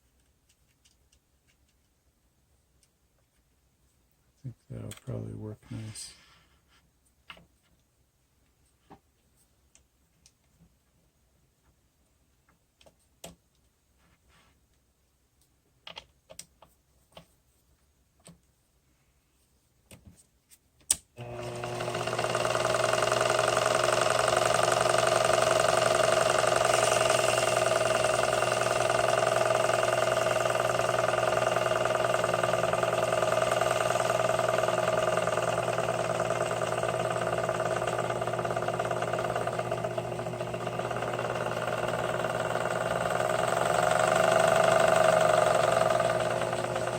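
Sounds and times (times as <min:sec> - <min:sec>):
small lathe motor whining: 0:21.2 - 0:46.9.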